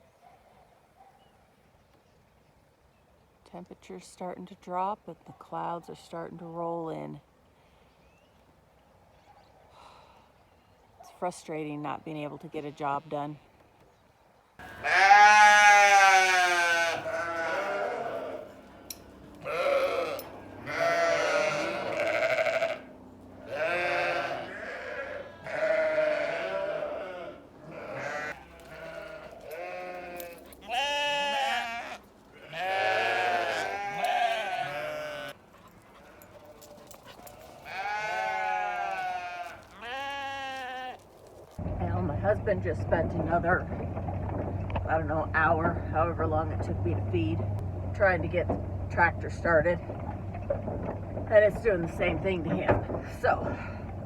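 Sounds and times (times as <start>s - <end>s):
sheep bleating: 14.6s - 41.0s.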